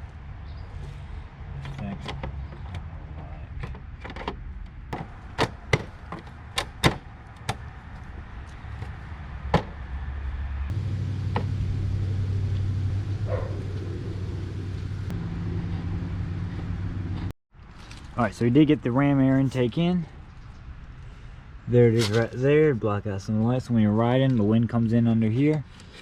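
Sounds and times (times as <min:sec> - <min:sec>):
plastic panels clicking and knocking: 0:03.6 - 0:07.6
steady low hum: 0:10.7 - 0:17.3.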